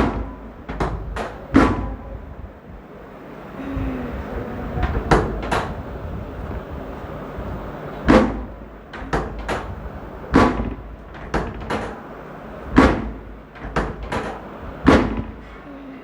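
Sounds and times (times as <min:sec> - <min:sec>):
sharp knocks: 0:00.0 - 0:02.0, 0:04.8 - 0:05.9, 0:08.0 - 0:15.6.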